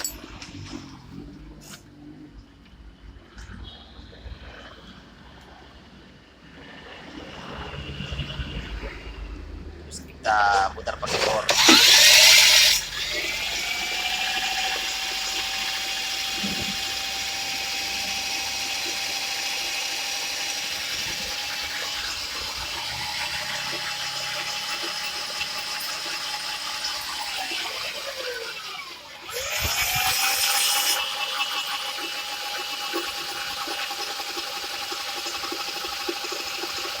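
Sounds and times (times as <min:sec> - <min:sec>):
electric drill motor whine: 0:11.1 - 0:37.0.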